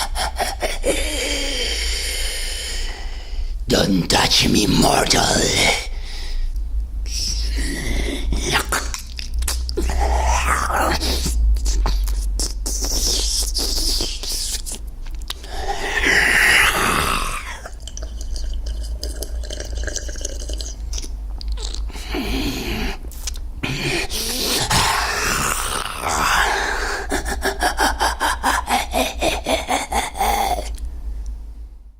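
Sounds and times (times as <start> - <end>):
wet slurping and sucking mouth sounds: 7.2 - 30.9.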